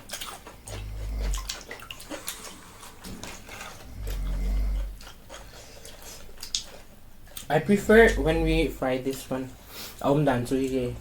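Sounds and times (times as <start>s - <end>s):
chewing with crackly clicks: 0.0s - 8.2s
mouth noises: 7.4s - 9.0s.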